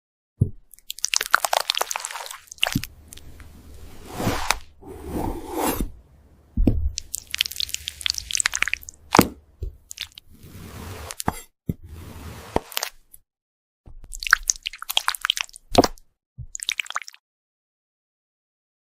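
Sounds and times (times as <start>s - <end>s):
brittle crackling and crunching: 0.8s - 3.2s, 7.0s - 9.2s.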